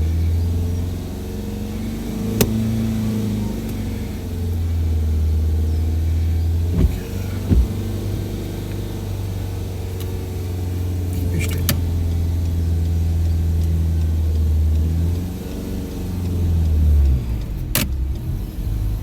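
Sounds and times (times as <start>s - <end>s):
car engine drone: 0.0s - 19.0s
short thumps: 6.2s - 9.2s
sharp click: 13.6s - 18.4s.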